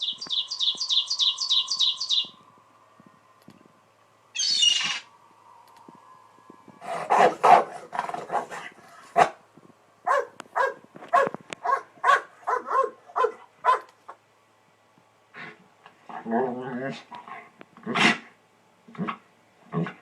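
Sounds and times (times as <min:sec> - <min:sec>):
dog barking: 0:07.1 - 0:08.6, 0:09.2 - 0:09.4, 0:10.0 - 0:13.9.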